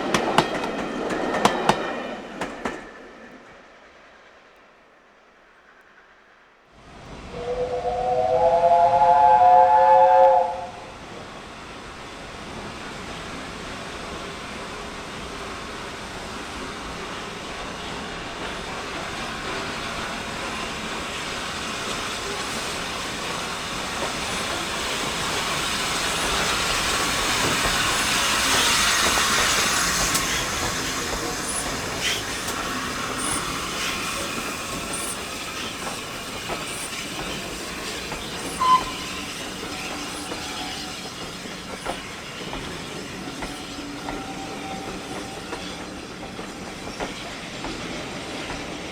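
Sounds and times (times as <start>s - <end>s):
train passing: 0.0s - 48.9s
wheels clicking over rail joints: 17.6s - 48.9s
short sharp squeak: 38.4s - 39.2s.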